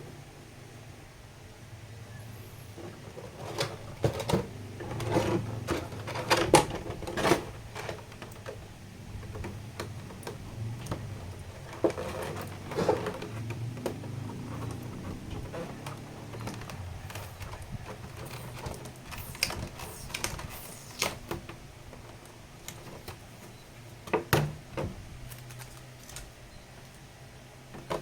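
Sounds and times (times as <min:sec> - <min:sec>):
cardboard box handling clicks and rustles: 0:09.3 - 0:26.4.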